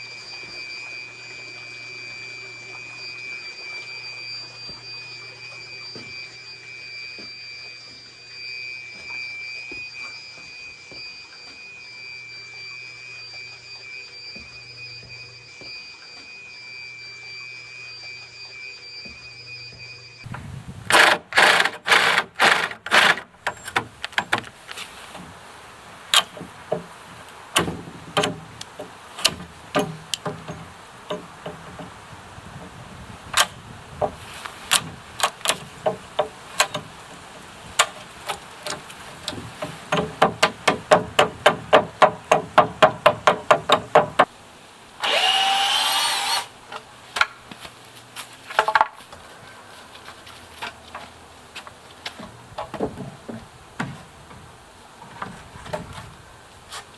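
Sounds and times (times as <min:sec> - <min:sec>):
hammer blows on wood: 0:26.2 - 0:44.3
loud whirring burst: 0:45.0 - 0:46.6.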